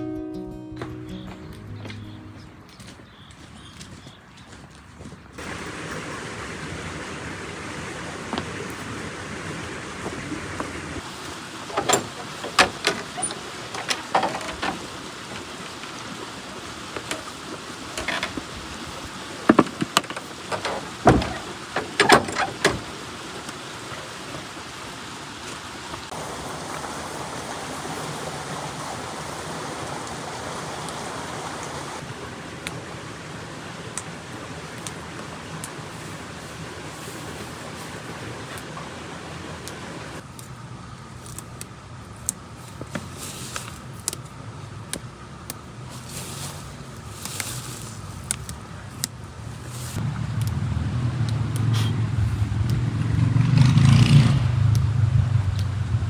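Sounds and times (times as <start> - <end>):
sharp clicks and knocks: 11.6 - 16.0, 17.0 - 18.5, 19.5 - 23.1.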